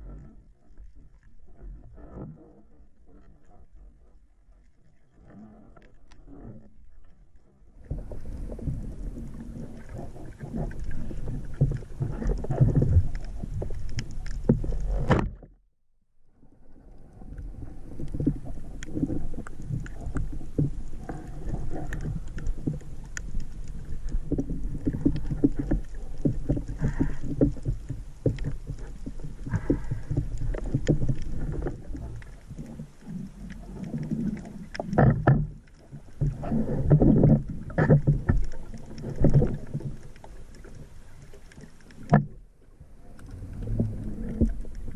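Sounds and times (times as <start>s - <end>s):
water washing and splashing: 7.8s - 15.1s, 17.3s - 44.9s
small clicks and knocks: 18.0s - 42.4s.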